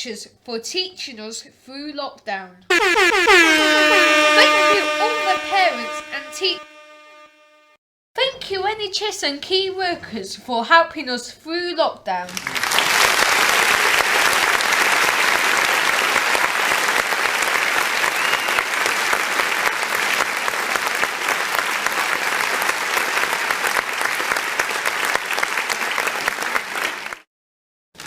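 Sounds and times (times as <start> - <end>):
crowd applauding: 12.4 - 27.2.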